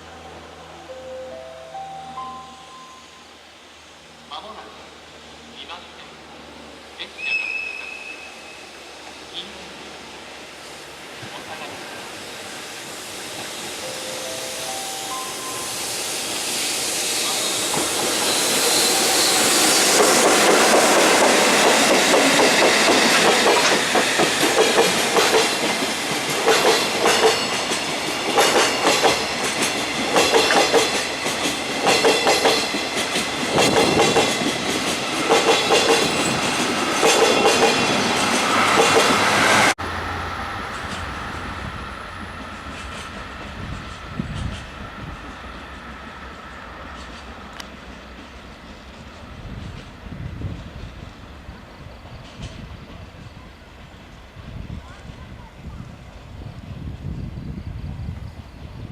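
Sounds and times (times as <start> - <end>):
train wheels clattering over rail joints: 17.5 - 39.4.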